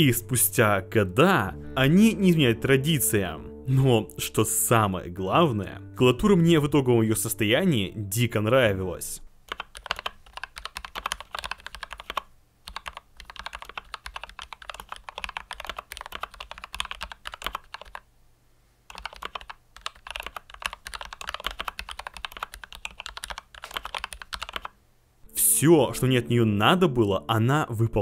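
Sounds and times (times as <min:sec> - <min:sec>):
fast mechanical keyboard typing: 0:09.5 - 0:18.1, 0:18.9 - 0:24.8.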